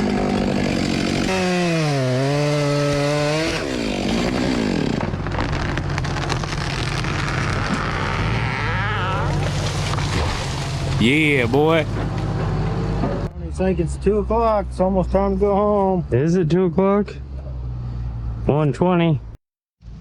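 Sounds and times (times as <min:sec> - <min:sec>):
chainsaw cutting into tree: 0:00.0 - 0:11.8.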